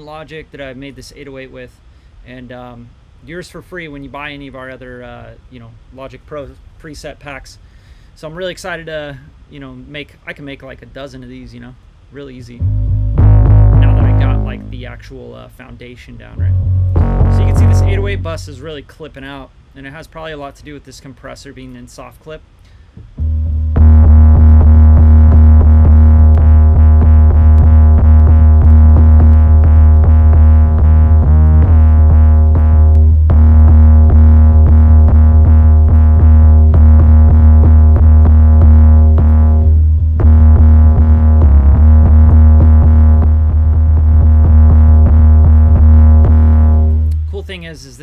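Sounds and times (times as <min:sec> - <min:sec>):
distorted bass synth: 0:12.6 - 0:15.2, 0:16.4 - 0:18.7, 0:23.2 - 0:47.3.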